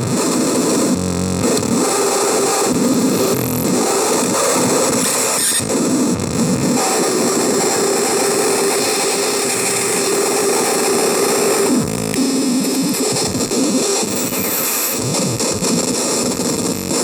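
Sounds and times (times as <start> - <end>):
harsh distorted synth noise: 0.0 - 17.0
wavering buzzing tone: 0.8 - 5.7, 6.8 - 13.3, 14.0 - 15.6.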